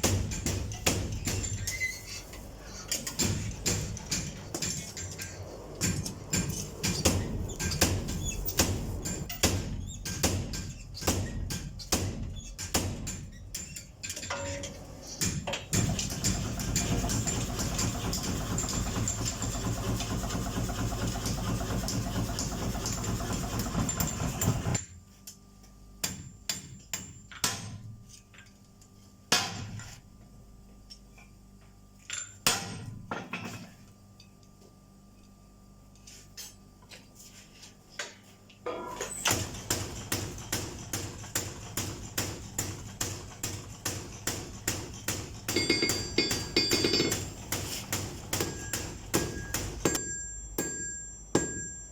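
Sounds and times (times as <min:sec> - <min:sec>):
hammer striking hot steel: 0:00.0 - 0:01.9, 0:05.8 - 0:14.6, 0:15.2 - 0:24.8, 0:39.3 - 0:51.9
dense steady machine noise: 0:00.0 - 0:13.1, 0:14.3 - 0:24.9, 0:39.2 - 0:51.9.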